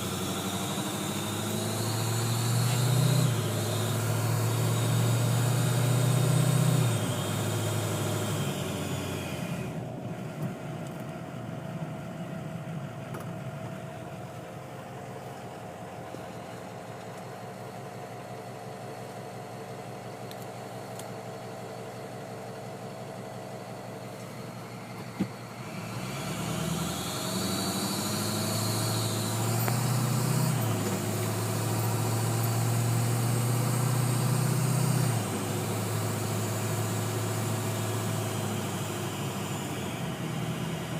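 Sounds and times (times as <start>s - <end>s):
turbo whine: 0.0s - 10.6s, 24.3s - 40.9s
diesel engine revving: 0.0s - 17.8s, 21.0s - 40.9s.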